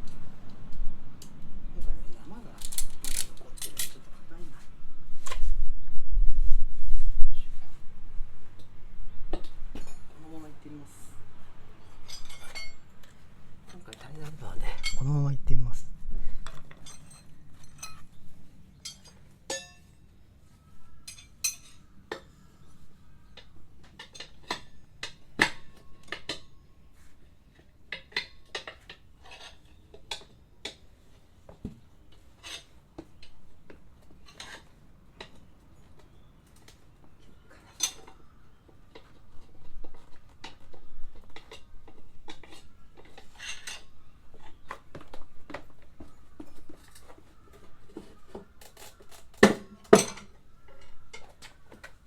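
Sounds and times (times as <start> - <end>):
metal hand tools clinking: 12.0 - 12.8, 18.8 - 19.9, 21.0 - 21.8.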